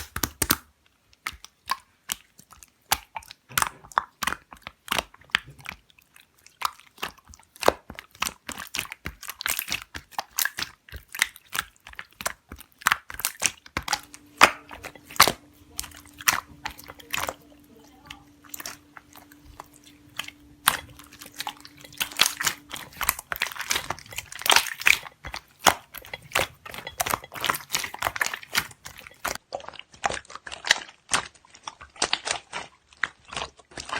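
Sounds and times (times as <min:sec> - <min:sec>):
slime crackling and popping: 0:00.0 - 0:33.9
faint steady hum: 0:13.7 - 0:29.4.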